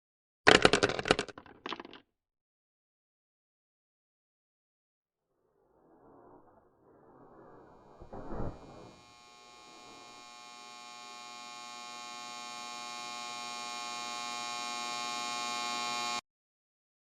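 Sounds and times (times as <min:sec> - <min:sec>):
short thud: 0:07.9 - 0:09.0
buzzing hum: 0:08.0 - 0:16.2.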